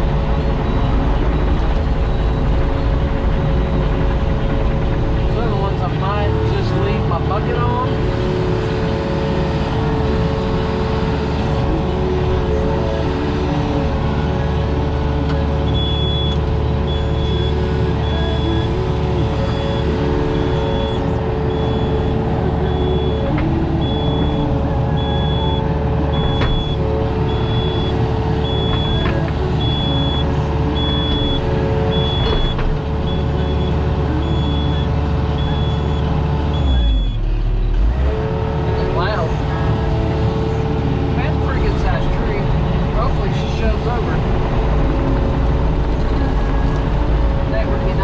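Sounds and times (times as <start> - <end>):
diesel engine running: 0.0 - 48.0
backup alarm beeping: 15.7 - 37.2.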